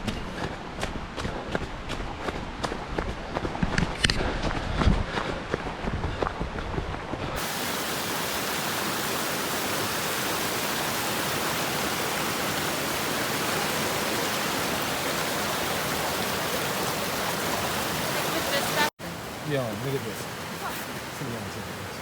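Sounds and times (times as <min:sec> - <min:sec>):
fast-flowing water rushing: 0:07.4 - 0:22.0.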